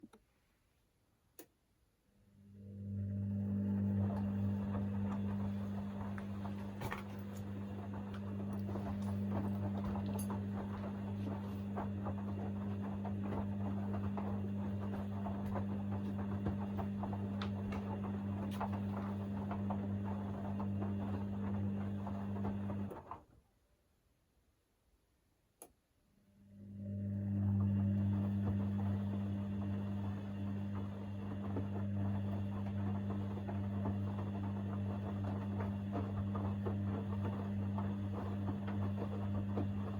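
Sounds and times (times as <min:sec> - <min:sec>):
washing machine drum motor hum: 0:02.4 - 0:23.3, 0:26.5 - 0:39.9
wet laundry tumbling and splashing: 0:03.9 - 0:22.9, 0:28.4 - 0:39.9.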